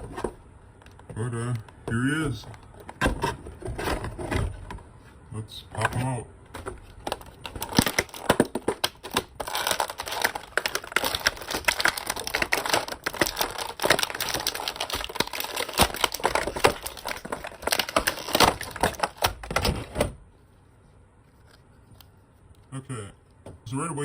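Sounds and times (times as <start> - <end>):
plastic packaging clicking and crackling: 5.8 - 20.0.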